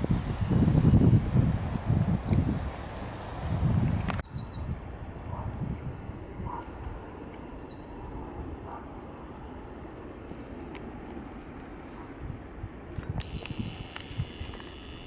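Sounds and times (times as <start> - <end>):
songbird singing: 2.1 - 5.4, 6.5 - 8.0, 10.6 - 11.2, 12.5 - 15.0
sharp clicks: 13.0 - 15.0.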